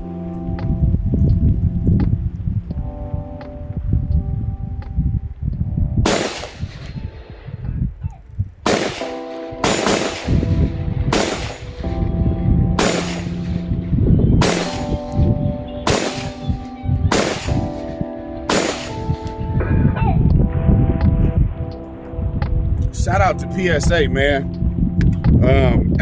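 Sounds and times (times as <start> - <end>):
background music: 0.0 - 26.0
rifle shots with ringing tail: 6.0 - 7.6, 8.6 - 12.0, 12.8 - 13.8, 14.4 - 19.4.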